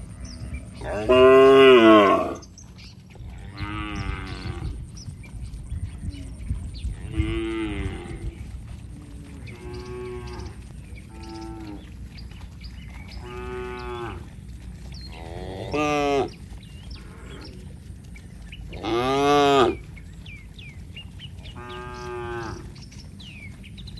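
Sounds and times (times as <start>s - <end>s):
cattle mooing: 0.8s - 2.5s, 3.3s - 4.8s, 7.0s - 12.0s, 13.1s - 17.9s, 18.6s - 20.0s, 21.4s - 22.9s.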